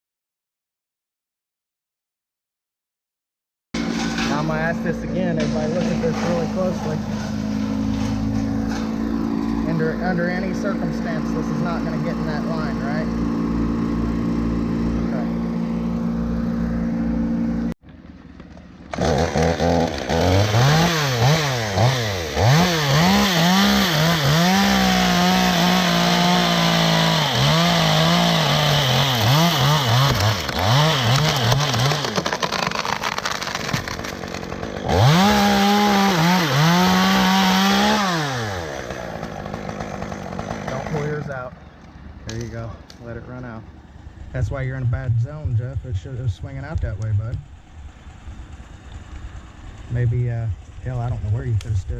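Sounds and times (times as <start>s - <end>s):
chainsaw revving and cutting: 3.8s - 17.7s, 18.8s - 41.5s
steady engine hum: 3.8s - 32.4s, 34.4s - 51.9s.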